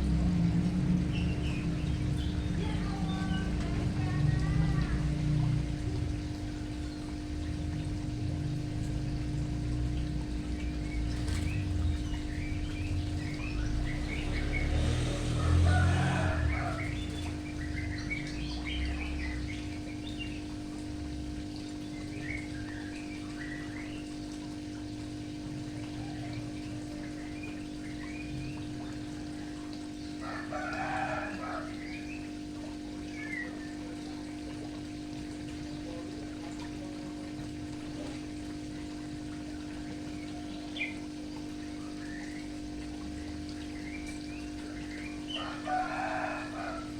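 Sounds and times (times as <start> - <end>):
steady hum: 0.0 - 30.6
birds chirping: 0.0 - 46.9.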